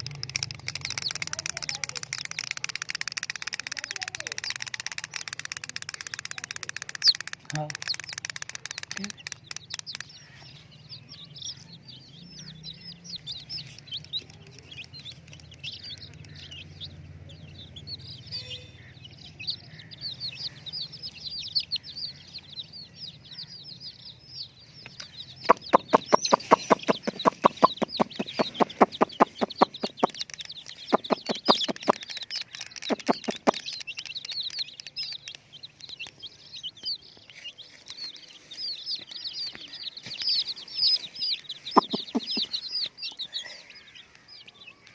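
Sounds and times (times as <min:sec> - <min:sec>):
chicks peeping: 0:00.0 - 0:44.9
rapid run of pulses: 0:25.5 - 0:30.2.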